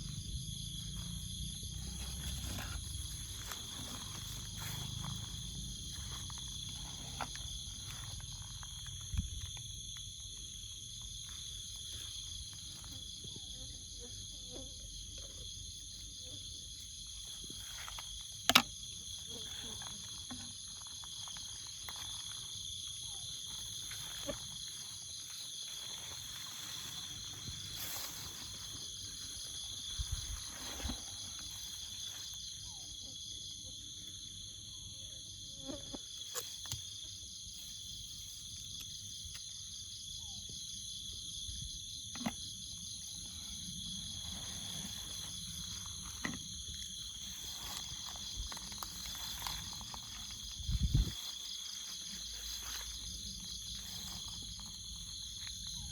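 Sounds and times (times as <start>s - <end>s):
insects trilling: 0.0s - 55.9s.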